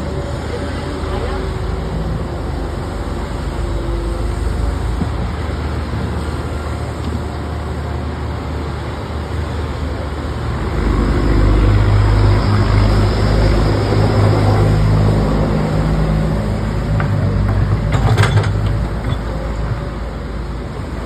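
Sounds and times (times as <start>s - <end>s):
diesel engine running: 0.0s - 21.0s.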